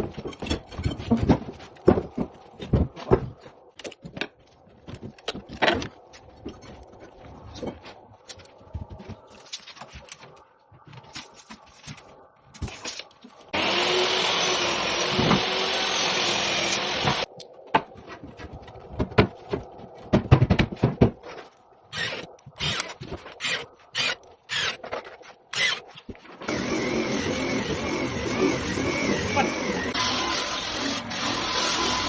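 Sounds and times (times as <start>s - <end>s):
power tool running: 13.6s - 17.3s, 26.4s - 32.0s.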